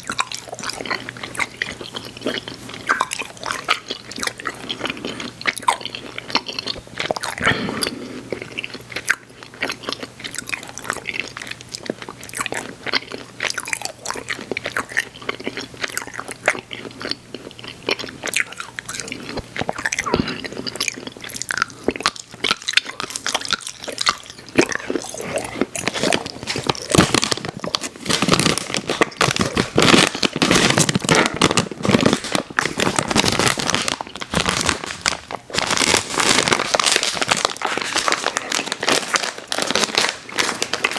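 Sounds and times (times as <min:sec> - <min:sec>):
chewing sour candy: 0:00.0 - 0:40.9.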